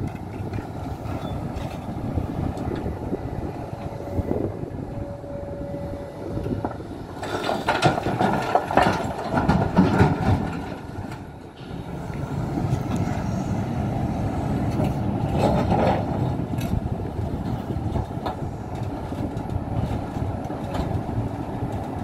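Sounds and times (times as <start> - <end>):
excavator diesel engine whining: 0.0 - 22.0
bucket clattering and scraping stones: 7.2 - 10.8.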